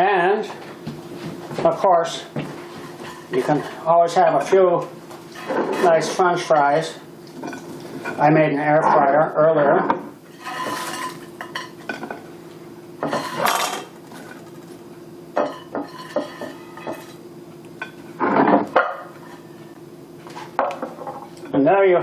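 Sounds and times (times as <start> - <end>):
steady low hum: 0.0 - 22.0
dishes and utensils clattering: 10.3 - 12.2, 13.0 - 14.6, 15.4 - 17.2.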